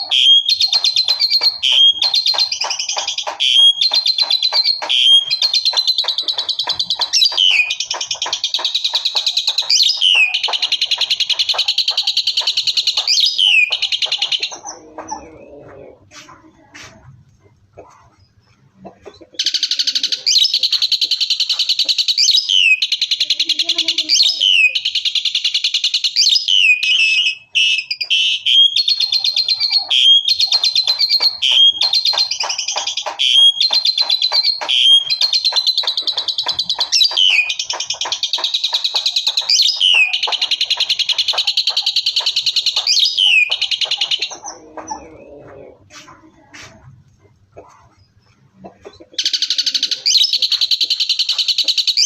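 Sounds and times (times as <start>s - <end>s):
starling singing pulsing chatter: 0.0s - 25.0s.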